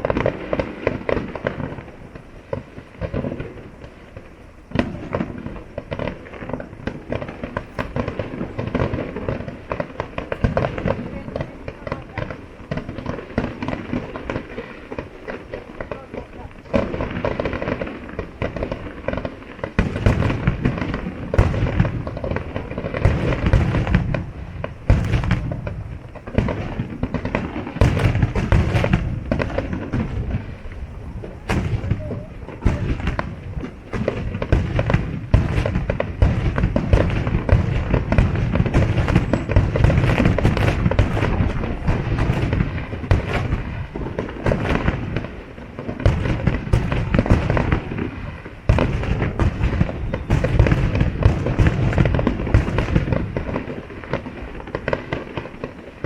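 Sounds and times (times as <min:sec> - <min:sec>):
fireworks bangs and crackles: 0:00.0 - 0:56.0
low booming: 0:16.7 - 0:45.4, 0:46.0 - 0:53.5.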